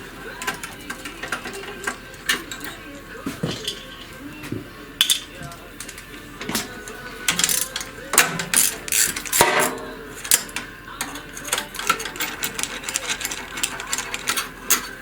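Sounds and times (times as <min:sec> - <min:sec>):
ratchet wrench clicking: 0:07.3 - 0:14.9
metal clinks of tools: 0:07.3 - 0:15.0.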